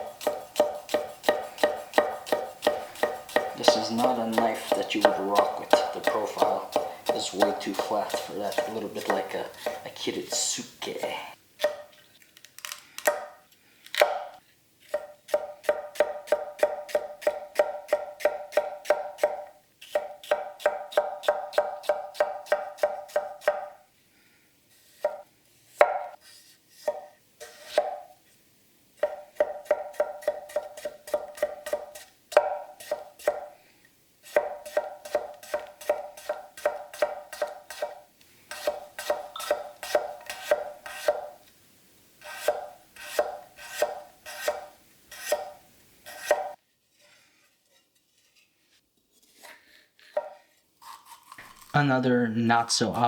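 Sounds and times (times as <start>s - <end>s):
knife chopping on cutting board: 0.0s - 10.5s, 14.9s - 23.7s, 26.8s - 28.0s, 29.0s - 33.5s, 34.3s - 41.3s, 42.2s - 46.6s.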